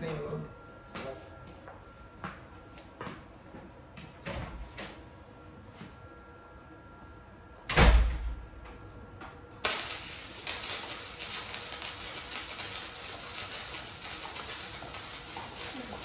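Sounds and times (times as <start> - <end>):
welder crackling hiss: 9.6 - 16.0.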